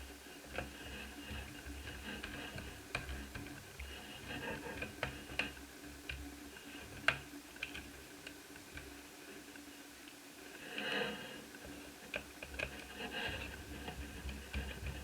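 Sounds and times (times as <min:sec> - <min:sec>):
light clicks and taps on plastic: 0:00.5 - 0:09.0, 0:11.5 - 0:15.0.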